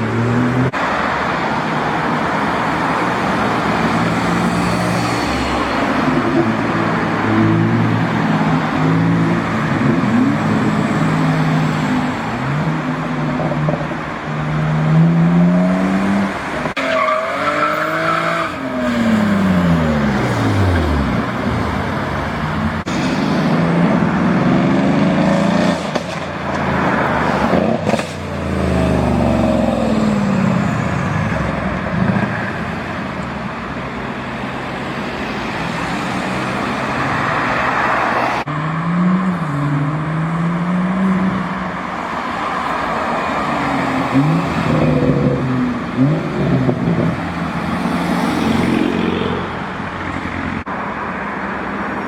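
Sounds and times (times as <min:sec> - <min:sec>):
cars accelerating past: 0:14.4 - 0:32.8.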